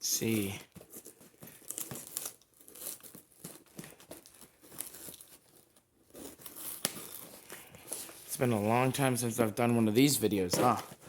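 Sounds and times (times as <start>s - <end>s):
package tearing and crinkling: 0.3s - 8.2s.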